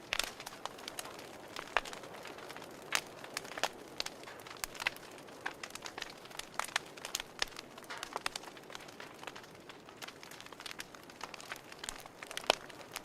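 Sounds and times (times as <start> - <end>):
fireplace crackling: 0.0 - 13.0.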